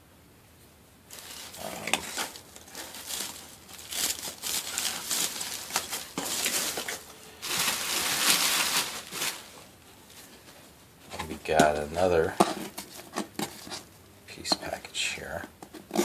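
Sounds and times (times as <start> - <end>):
plastic wrap crinkling: 1.1 - 10.6.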